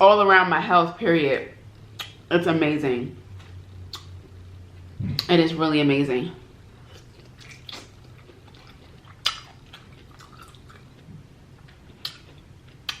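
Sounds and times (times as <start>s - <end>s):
person chewing: 6.8s - 13.0s.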